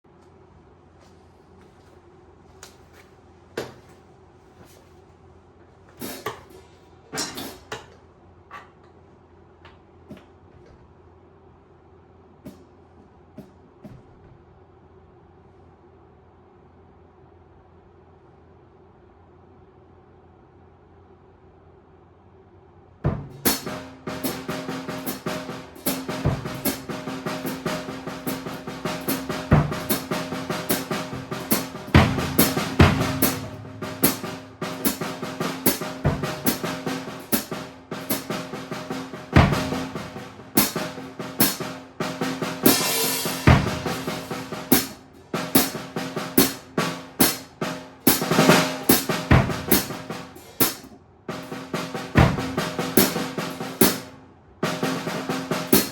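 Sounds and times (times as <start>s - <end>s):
acoustic drum kit playing: 6.0s - 6.6s, 23.0s - 55.9s.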